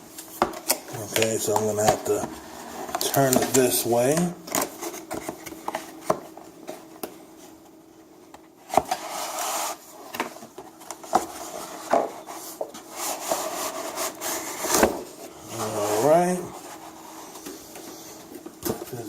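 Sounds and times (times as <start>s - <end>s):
cardboard scraping and sliding: 8.6s - 10.1s, 11.1s - 17.4s.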